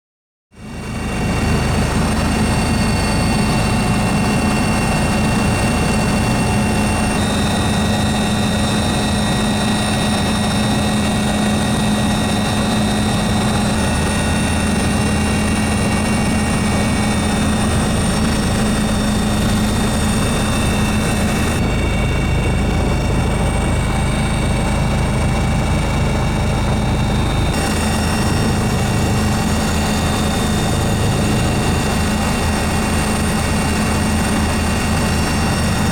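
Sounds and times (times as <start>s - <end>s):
helicopter engine and rotor: 0.5s - 35.9s.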